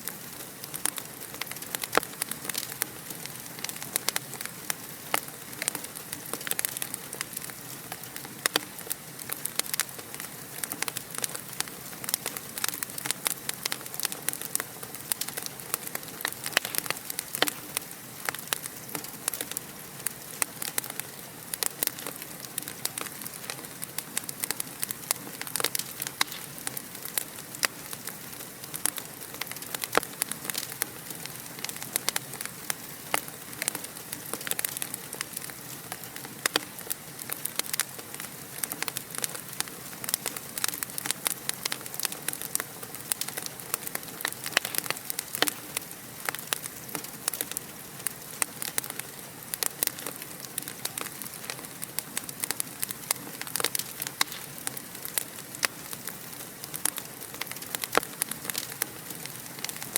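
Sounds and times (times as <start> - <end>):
steady hiss: 0.0 - 59.9
wood fire crackling: 0.0 - 59.9.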